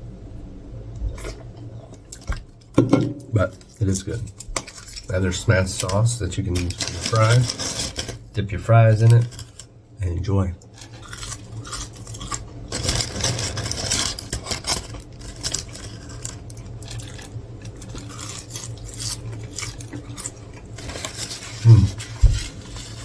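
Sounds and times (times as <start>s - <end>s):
clicks crinkles and scrapes: 3.5s - 8.4s, 9.0s - 9.7s, 10.6s - 23.0s
chewing food: 10.6s - 13.1s, 13.7s - 23.0s
low vocal hum: 21.4s - 22.6s.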